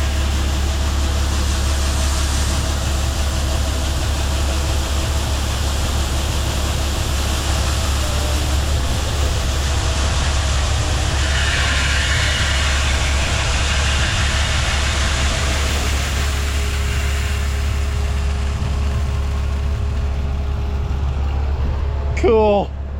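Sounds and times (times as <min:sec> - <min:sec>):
farm machinery engine humming: 0:00.0 - 0:22.9
bright hiss: 0:01.6 - 0:19.7.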